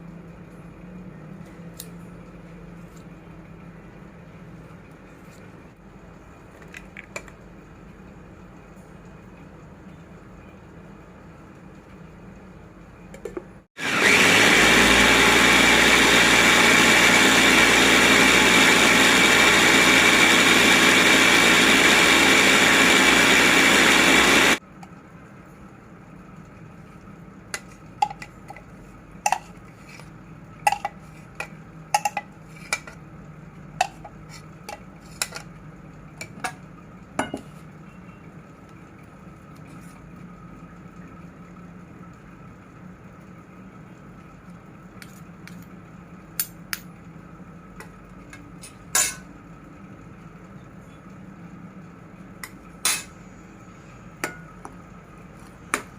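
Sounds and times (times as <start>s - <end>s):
electric food chopper grinding: 13.8s - 24.6s.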